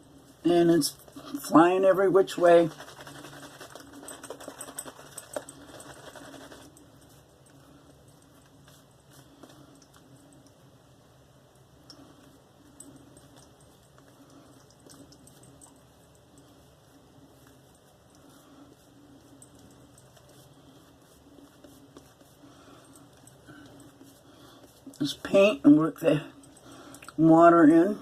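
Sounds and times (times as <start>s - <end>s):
shaving brush lathering soap: 0.5s - 7.3s, 13.4s - 26.1s.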